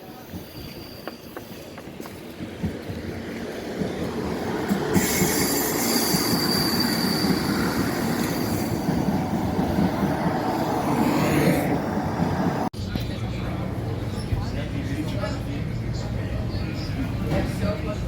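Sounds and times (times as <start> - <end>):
high wheel squeal: 0.0 - 2.2, 4.9 - 8.9
train wheels rumbling and clattering: 0.1 - 18.0.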